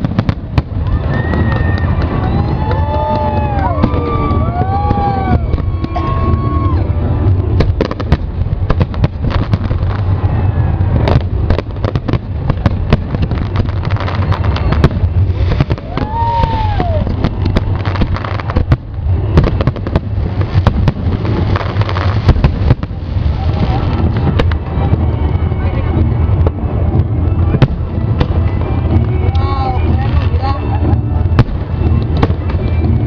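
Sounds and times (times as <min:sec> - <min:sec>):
whistling firework shell: 0:00.0 - 0:06.6, 0:13.5 - 0:22.6
fireworks bangs and crackles: 0:00.0 - 0:33.0.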